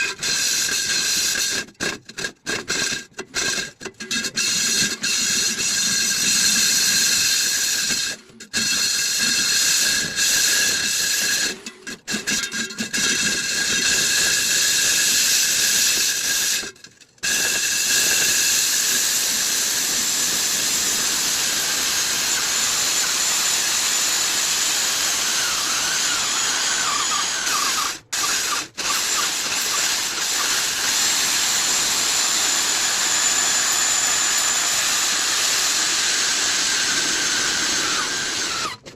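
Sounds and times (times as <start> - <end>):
core drill boring into concrete: 0.0 - 38.9.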